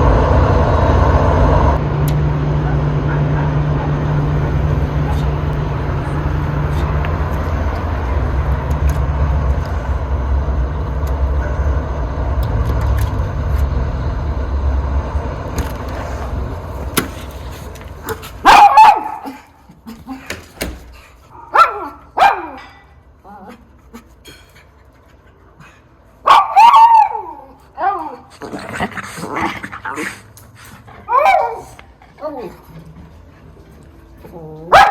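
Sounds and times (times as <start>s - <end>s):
heavy engine rumble: 0.0s - 18.7s
dog barking sharply: 18.0s - 19.5s, 21.4s - 22.8s, 26.2s - 27.3s.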